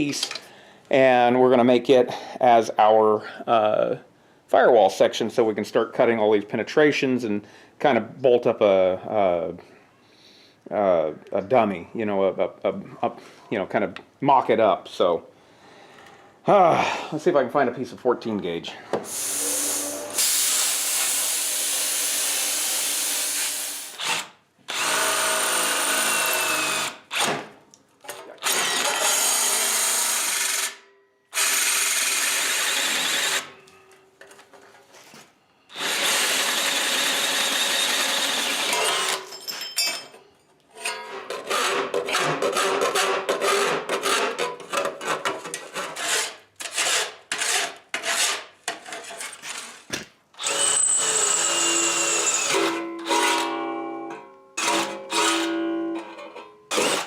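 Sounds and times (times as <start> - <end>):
handheld power tool bursts: 19.0 - 27.5, 35.7 - 39.3, 50.4 - 53.6, 56.7 - 57.0.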